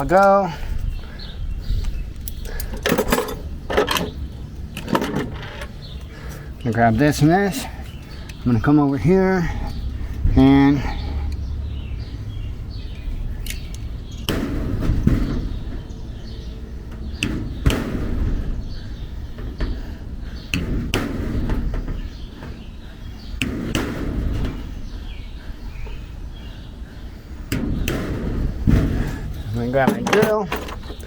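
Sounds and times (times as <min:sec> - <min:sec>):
wind on microphone: 0:00.6 - 0:03.2.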